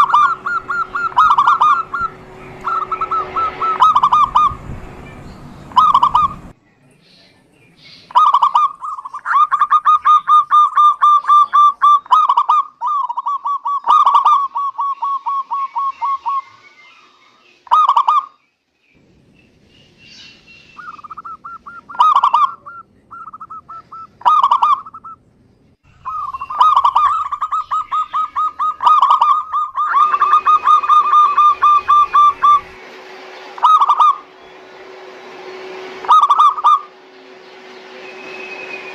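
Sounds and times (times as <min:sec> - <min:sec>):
doves cooing: 0:00.0 - 0:04.6, 0:08.1 - 0:16.6, 0:20.8 - 0:25.2, 0:26.0 - 0:34.4, 0:35.6 - 0:37.0.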